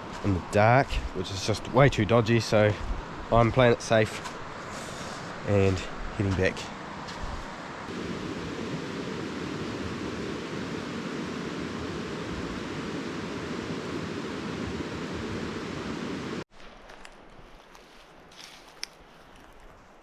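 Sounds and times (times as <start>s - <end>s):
river water rushing: 7.7s - 16.4s.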